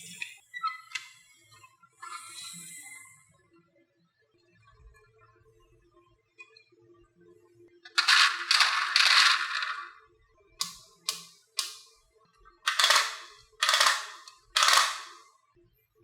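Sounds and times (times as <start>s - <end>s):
marbles rattling down wooden run: 7.9s - 10.0s, 12.7s - 15.2s.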